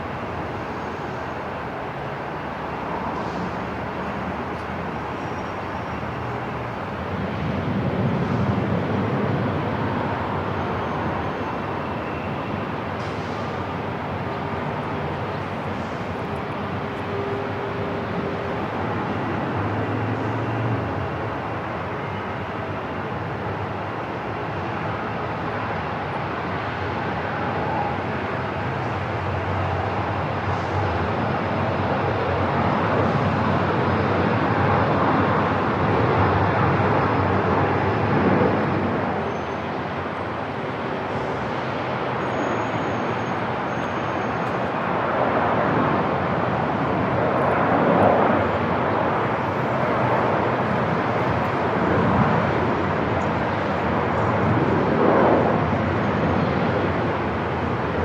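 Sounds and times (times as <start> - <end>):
steady rushing noise: 0.0 - 25.8.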